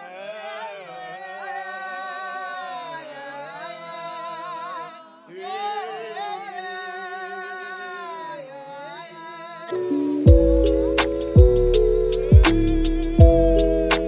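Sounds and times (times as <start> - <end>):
music with sung melody: 9.7 - 14.0.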